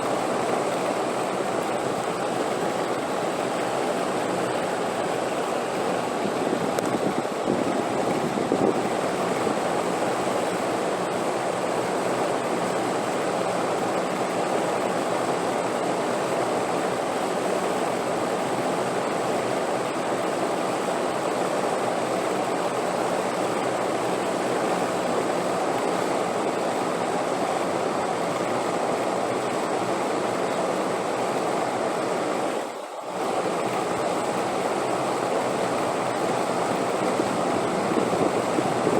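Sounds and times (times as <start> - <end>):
wind blowing: 4.1 - 10.1, 36.3 - 38.9.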